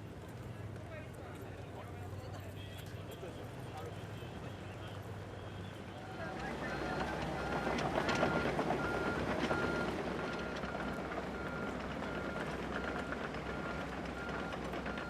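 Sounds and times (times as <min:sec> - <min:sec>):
engine running: 0:02.9 - 0:15.0
vehicle reversing alarm beeping: 0:04.1 - 0:15.0.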